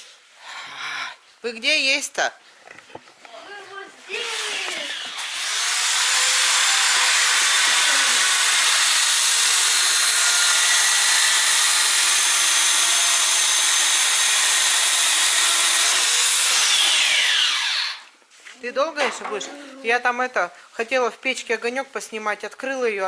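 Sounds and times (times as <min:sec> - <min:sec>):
power saw cutting wood: 0:04.1 - 0:18.1.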